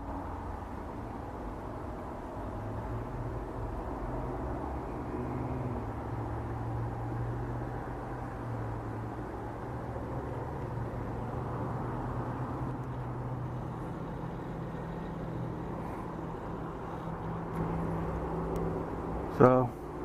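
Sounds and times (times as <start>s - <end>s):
road traffic engine drone: 0.0s - 20.0s.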